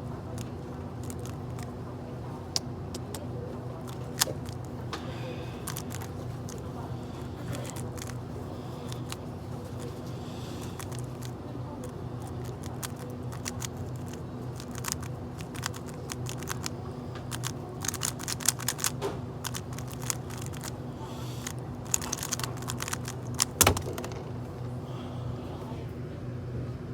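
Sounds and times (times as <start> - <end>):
plastic puzzle cube clicking: 0.4 - 1.7, 3.8 - 4.7, 5.6 - 6.6, 7.5 - 8.2, 10.6 - 24.2.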